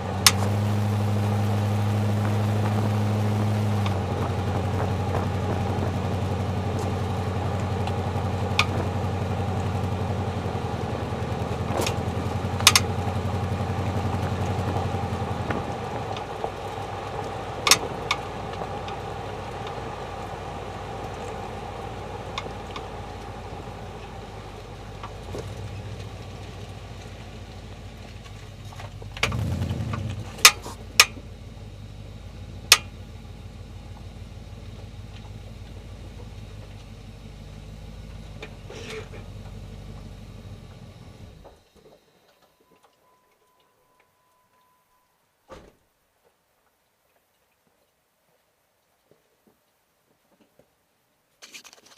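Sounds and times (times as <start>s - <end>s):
car engine humming: 0.0s - 44.1s
sharp clicks and knocks: 0.2s - 0.6s, 2.2s - 9.0s, 11.4s - 19.8s, 28.0s - 31.2s, 32.7s - 33.0s.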